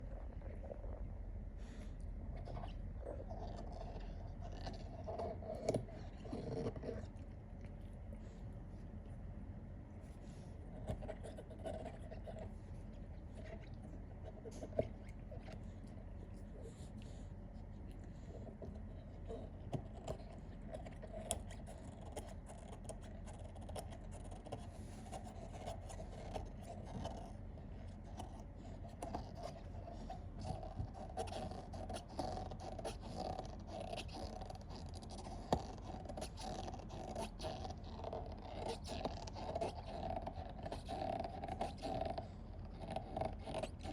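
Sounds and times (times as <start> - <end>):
steady low hum: 0.0 - 43.9
dog scraping and scratching: 2.4 - 7.2.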